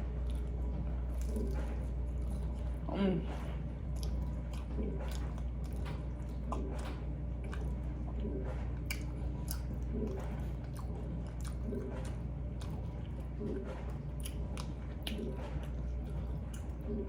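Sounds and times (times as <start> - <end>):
chewing crunchy food: 0.0 - 17.0
steady low hum: 0.0 - 17.0.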